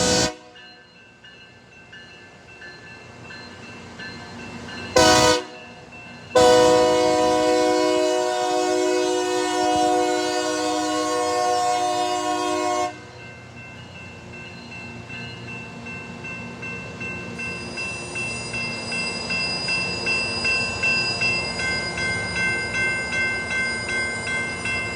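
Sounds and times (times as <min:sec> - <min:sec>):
train air horn: 0:00.0 - 0:00.6, 0:05.0 - 0:05.6, 0:06.4 - 0:13.1
train rumble: 0:00.0 - 0:24.9.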